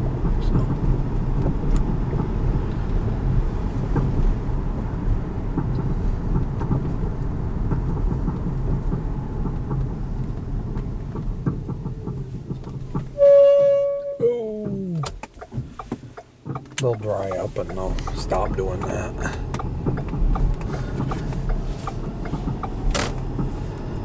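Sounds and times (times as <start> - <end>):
car road and wind noise: 0.0 - 24.0
high-pitched brake squeal: 13.1 - 14.6.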